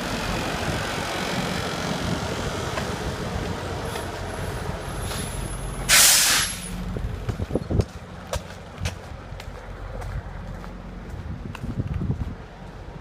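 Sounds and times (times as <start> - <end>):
large engine running: 0.0 - 5.9
loud hiss: 5.9 - 6.8.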